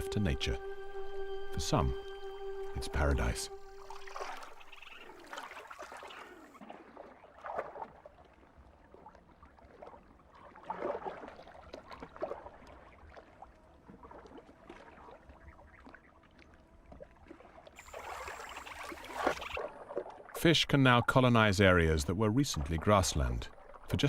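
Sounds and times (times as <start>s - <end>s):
water drips: 1.6s - 6.6s
water splashing and gurgling: 2.8s - 24.0s.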